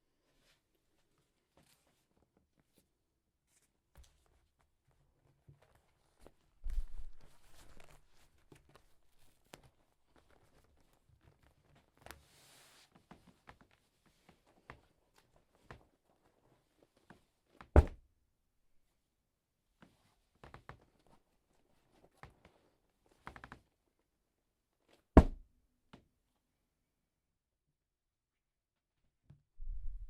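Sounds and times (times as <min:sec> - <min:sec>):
fabric rustling: 0:05.7 - 0:11.0.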